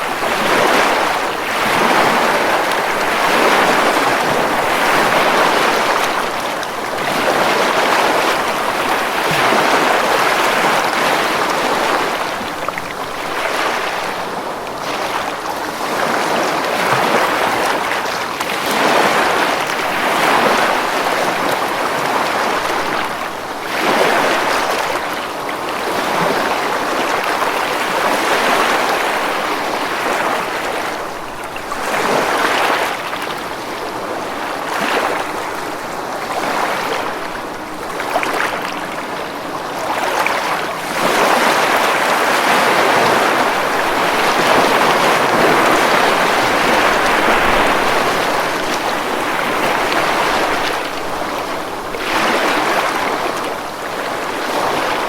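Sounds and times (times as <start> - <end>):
ocean waves breaking on beach: 0.0 - 55.0.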